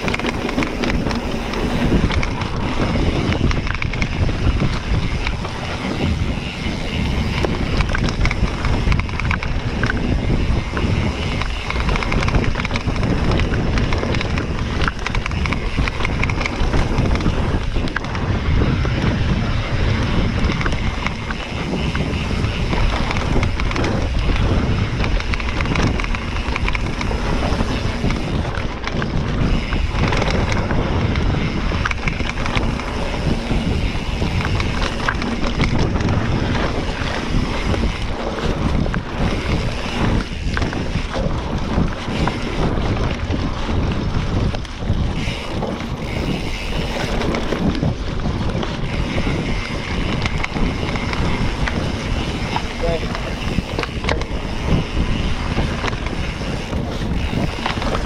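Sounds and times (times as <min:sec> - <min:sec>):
bike tyres on dirt trail: 0:00.0 - 0:58.0
wind on microphone: 0:00.0 - 0:58.0.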